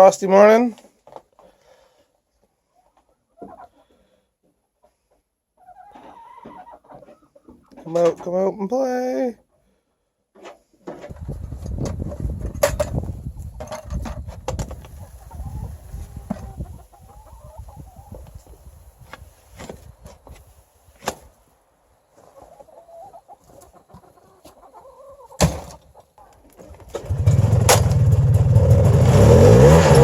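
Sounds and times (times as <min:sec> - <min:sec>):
chickens clucking: 0:02.7 - 0:08.4, 0:10.4 - 0:18.8, 0:22.1 - 0:27.1
low rumble: 0:27.1 - 0:30.0.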